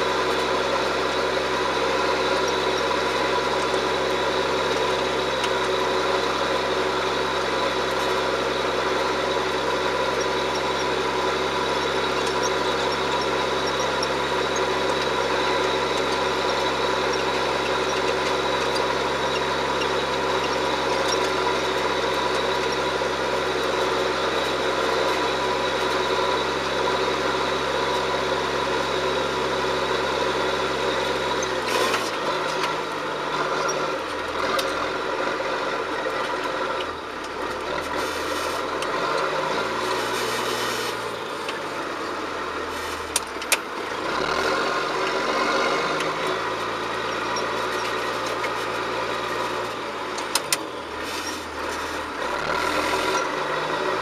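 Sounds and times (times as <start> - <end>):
tractor diesel engine running: 0.0 - 54.0.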